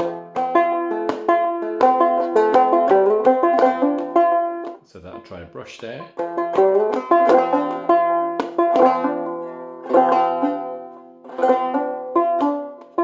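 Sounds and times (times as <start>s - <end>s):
banjo strums and plucked notes: 0.0s - 13.0s.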